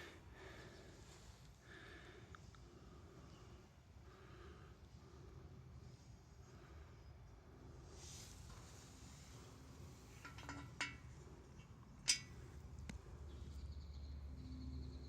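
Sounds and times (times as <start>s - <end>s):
low steady hum: 0.0s - 15.0s
metal parts clicking and clinking: 10.2s - 11.1s, 12.0s - 12.4s.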